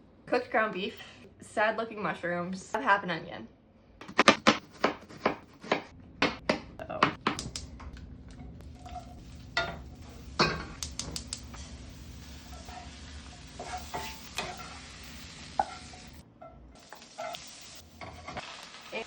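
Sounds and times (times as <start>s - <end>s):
utensil stirring food: 7.3s - 18.9s
food sizzling in a frying pan: 8.6s - 16.2s, 16.8s - 19.0s.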